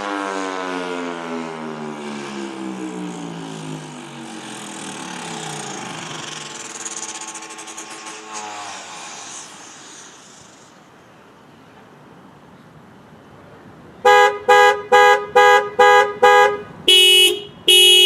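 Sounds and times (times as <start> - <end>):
faint rushing noise: 3.4 - 14.0.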